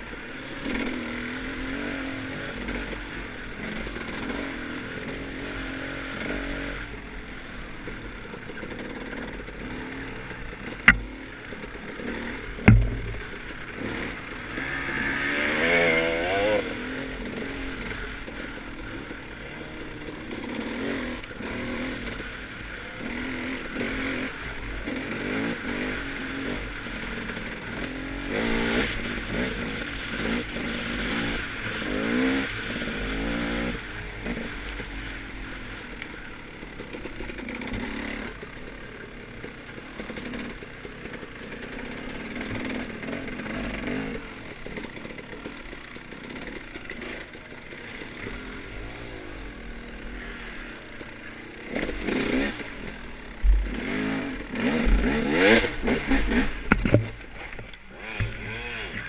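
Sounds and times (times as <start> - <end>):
dirt bike engine revving: 0.0 - 59.0.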